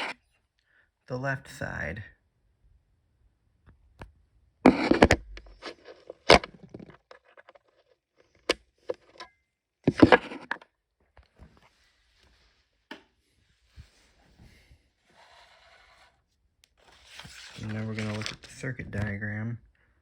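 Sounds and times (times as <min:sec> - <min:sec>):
handling clicks and knocks: 0:04.7 - 0:07.8, 0:09.9 - 0:10.6
rustling scrapes: 0:04.7 - 0:07.9, 0:09.9 - 0:10.6, 0:13.6 - 0:16.2, 0:16.8 - 0:18.7.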